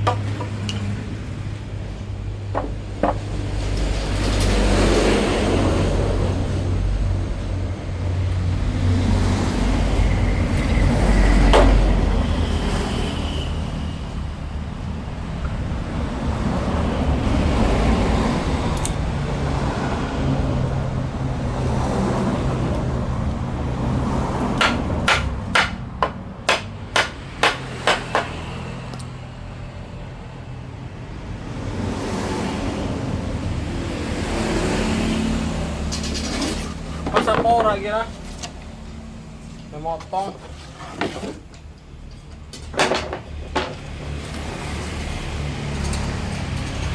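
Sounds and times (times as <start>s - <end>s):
sharp knocks on wood: 24.6s - 28.5s.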